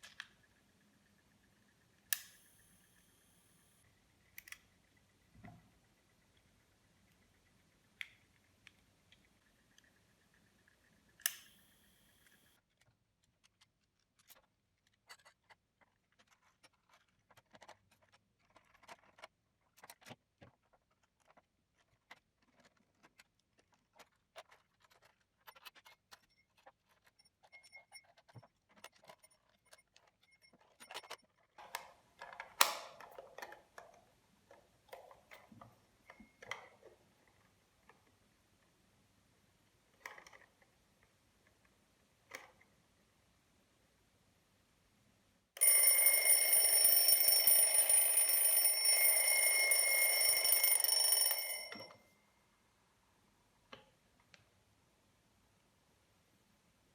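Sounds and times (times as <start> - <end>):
alarm clock being handled: 24.5 - 34.0, 45.6 - 52.0.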